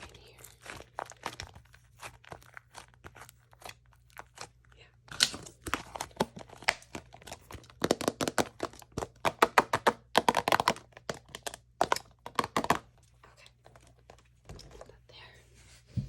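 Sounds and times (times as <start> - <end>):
slime crackling and popping: 0.0 - 12.8.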